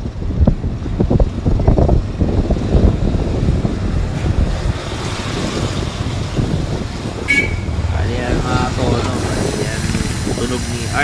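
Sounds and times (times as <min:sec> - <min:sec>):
bike rolling rumble: 0:00.0 - 0:11.0
wind buffeting microphone: 0:00.0 - 0:11.0
high-pitched tone: 0:07.3 - 0:07.9.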